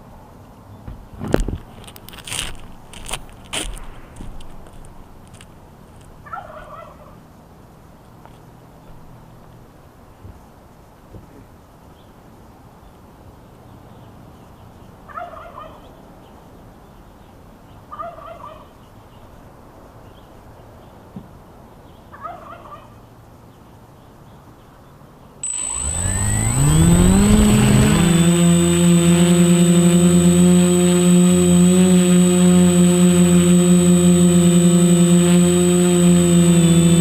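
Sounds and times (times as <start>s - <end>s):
quadcopter motors whining: 25.4s - 37.0s.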